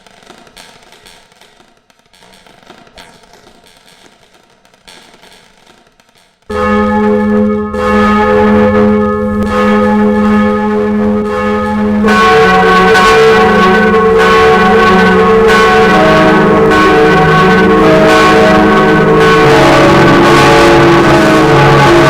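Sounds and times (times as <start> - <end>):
church bells ringing: 6.5 - 22.0.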